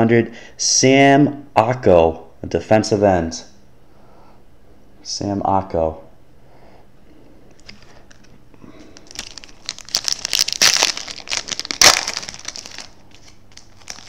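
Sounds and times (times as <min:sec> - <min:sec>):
wrapper tearing and crinkling: 0:07.6 - 0:14.0.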